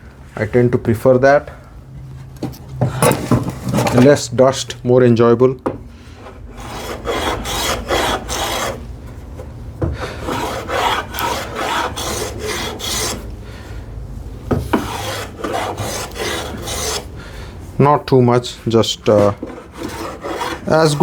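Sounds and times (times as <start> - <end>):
hand plane shaving wood: 6.2 - 8.8, 10.0 - 13.2, 14.7 - 17.1, 19.0 - 21.0.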